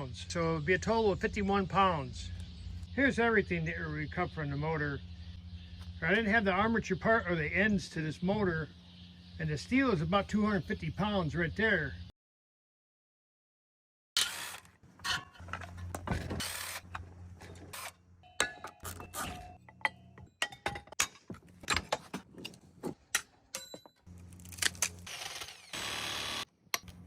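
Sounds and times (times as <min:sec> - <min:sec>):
low hum: 0:00.0 - 0:10.9
metal parts clanking: 0:15.0 - 0:25.0.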